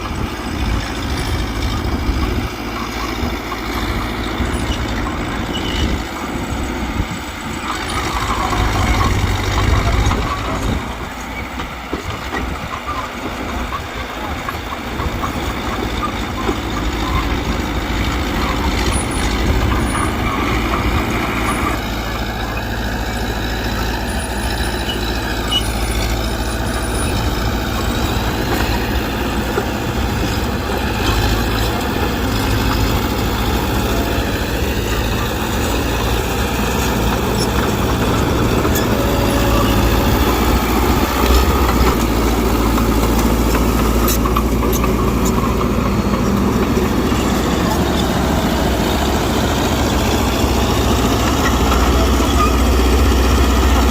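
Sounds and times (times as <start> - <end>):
bulldozer diesel engine: 0.0 - 53.9.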